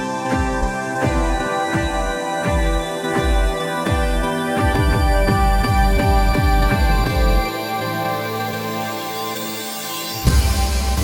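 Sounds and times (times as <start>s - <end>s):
deep bass beat: 0.0s - 7.5s, 10.2s - 11.0s.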